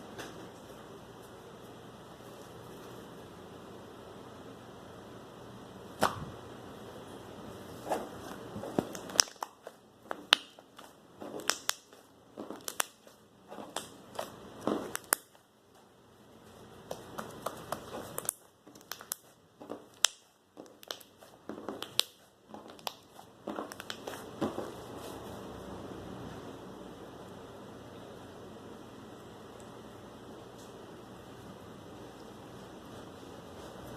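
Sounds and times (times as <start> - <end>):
hands kneading slime: 7.6 - 25.4.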